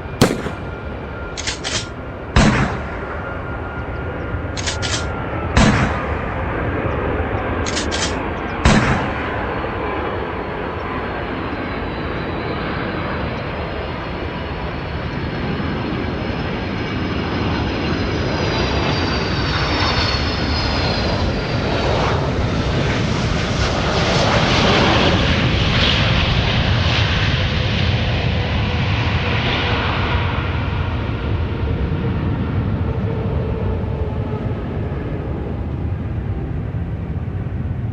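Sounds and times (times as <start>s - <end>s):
aeroplane engine whine: 0.0s - 37.9s
gunshot bangs: 0.2s - 2.9s.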